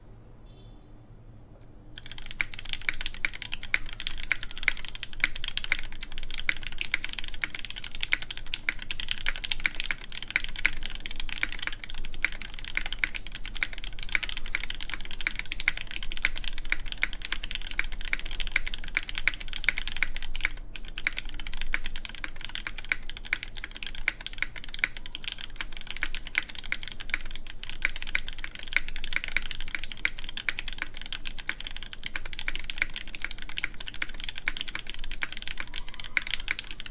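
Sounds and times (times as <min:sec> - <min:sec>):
fast typing on mechanical keyboard: 0:02.0 - 0:36.9.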